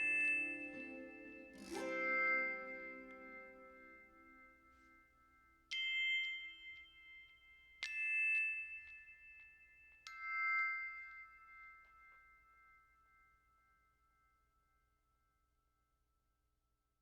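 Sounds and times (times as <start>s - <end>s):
background music: 0.0s - 4.7s
bell-like chime notes: 0.0s - 13.3s.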